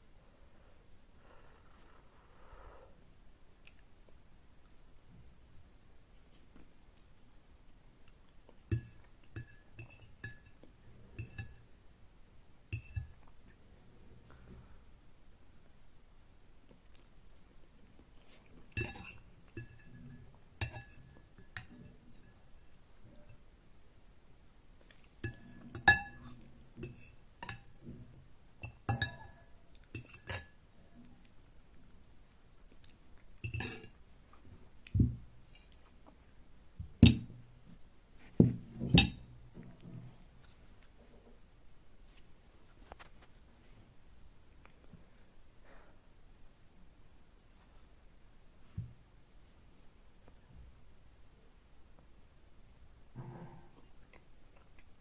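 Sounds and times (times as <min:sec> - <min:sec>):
tableware clinking: 0:08.7 - 0:11.6, 0:18.7 - 0:22.4, 0:25.2 - 0:27.8, 0:30.0 - 0:30.6, 0:33.4 - 0:34.0, 0:38.8 - 0:39.3.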